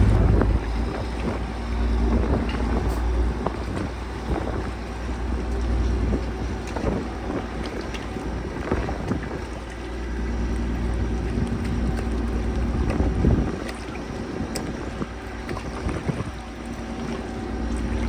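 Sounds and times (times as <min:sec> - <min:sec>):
vehicle engine running: 0:00.0 - 0:02.7
water churning: 0:00.0 - 0:18.0
wind buffeting microphone: 0:00.0 - 0:18.0.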